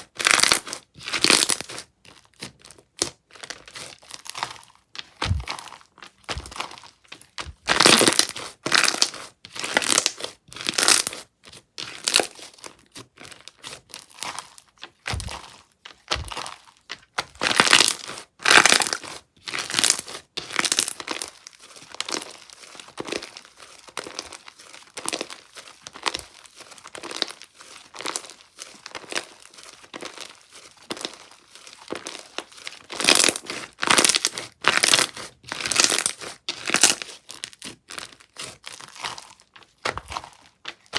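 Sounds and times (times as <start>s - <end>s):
slime squished by hand: 0.2s - 23.4s.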